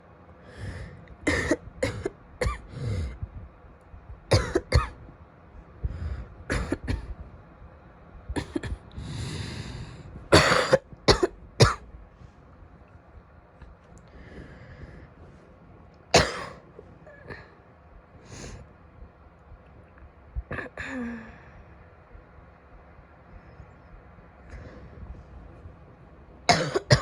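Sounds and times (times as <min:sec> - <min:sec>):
woman coughing: 0:01.3 - 0:02.6, 0:04.3 - 0:05.0, 0:06.5 - 0:07.1, 0:08.4 - 0:08.8, 0:10.3 - 0:11.8, 0:16.1 - 0:16.6, 0:26.5 - 0:27.0
long drawn breath: 0:08.9 - 0:10.2.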